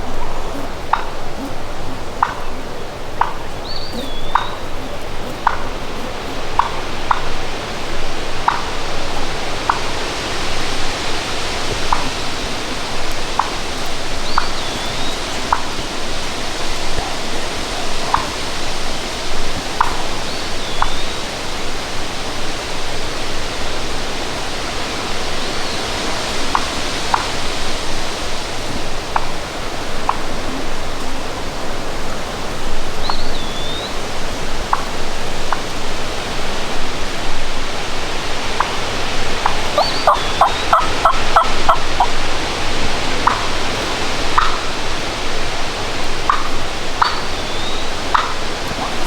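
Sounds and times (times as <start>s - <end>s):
gusting wind: 0.0s - 49.0s
turkey yelping: 0.1s - 7.5s, 8.4s - 8.8s, 11.9s - 15.8s, 39.4s - 42.4s, 43.2s - 44.7s, 46.3s - 49.0s
faint whistled bird call: 3.6s - 6.5s.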